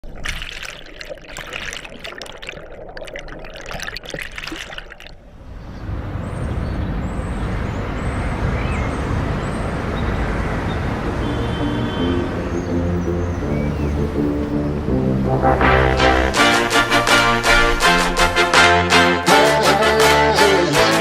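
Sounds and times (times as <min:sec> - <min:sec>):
river water splashing and rushing: 0:00.0 - 0:05.4, 0:07.5 - 0:20.0
steady low rumble: 0:12.0 - 0:18.6.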